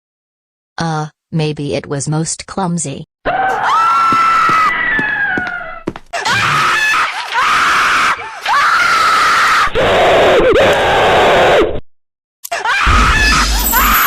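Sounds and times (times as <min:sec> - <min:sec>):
cartoon girl screaming: 0:03.3 - 0:11.6, 0:12.5 - 0:14.0.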